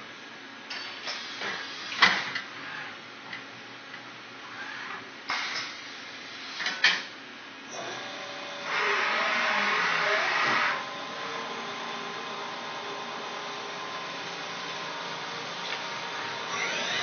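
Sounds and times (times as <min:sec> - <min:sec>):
milling machine motors whirring: 0:07.7 - 0:17.0.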